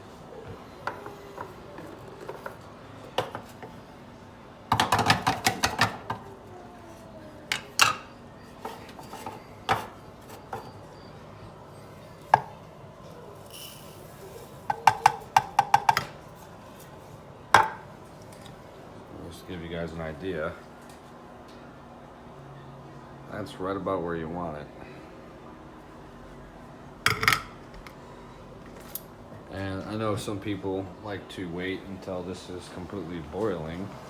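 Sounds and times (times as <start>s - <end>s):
utensils and dishes clicking: 4.7s - 6.3s.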